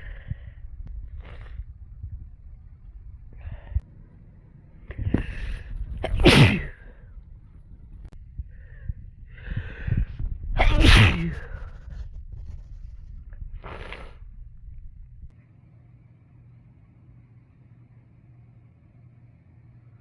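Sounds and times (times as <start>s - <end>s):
person sneezing: 5.2s - 6.9s, 10.6s - 11.7s
person breathing in: 8.4s - 10.1s.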